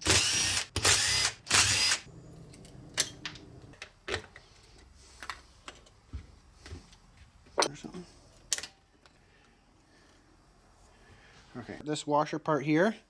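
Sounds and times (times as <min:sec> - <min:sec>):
power drill running: 0:00.0 - 0:02.1.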